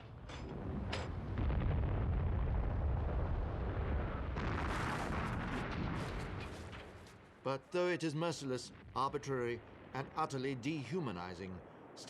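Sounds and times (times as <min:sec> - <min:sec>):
deep explosion rumble: 0:00.5 - 0:07.0.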